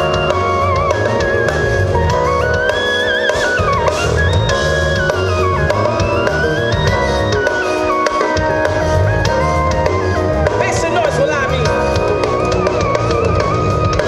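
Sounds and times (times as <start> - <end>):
instrumental music with drum beat: 0.0 - 14.0.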